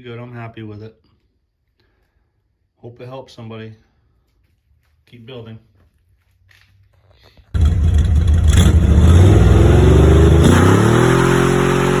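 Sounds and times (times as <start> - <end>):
car engine running and revving: 7.6 - 12.0.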